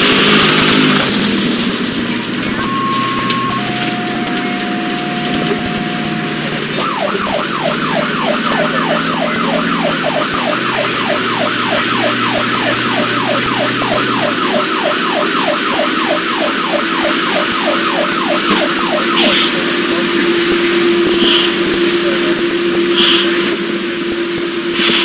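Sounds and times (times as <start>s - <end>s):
emergency siren yelping: 0.0s - 25.0s.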